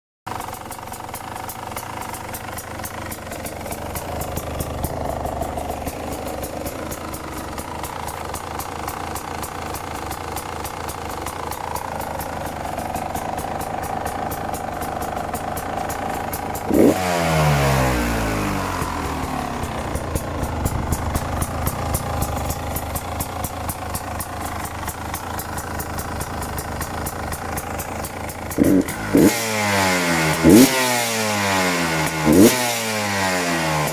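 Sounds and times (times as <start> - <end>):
motorcycle engine idling: 0.3 - 33.9
light ticking: 18.4 - 29.2.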